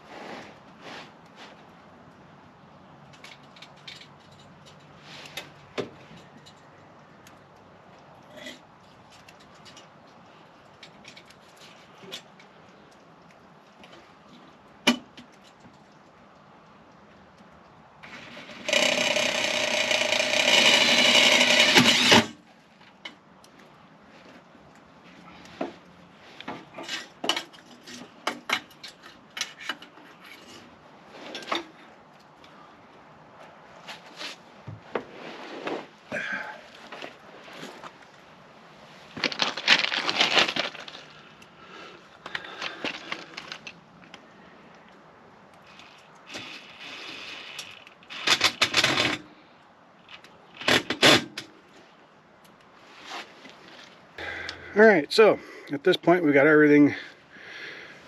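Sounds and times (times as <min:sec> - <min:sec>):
soft scraping: 0:00.0 - 0:01.7, 0:33.4 - 0:39.2, 0:52.8 - 0:54.0
metal tools clinking and rattling: 0:03.2 - 0:05.0.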